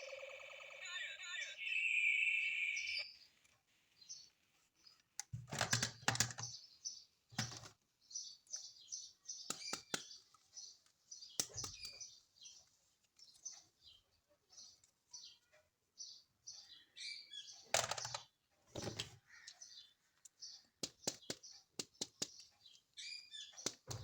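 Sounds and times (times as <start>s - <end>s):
plastic clicks and knocks: 5.2s - 6.6s, 17.7s - 19.2s.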